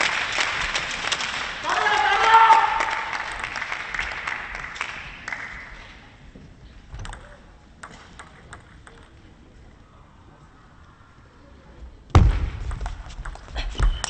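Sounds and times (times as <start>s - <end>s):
crowd applause: 0.0s - 5.7s
table tennis ball bouncing: 7.0s - 9.2s, 12.6s - 14.0s.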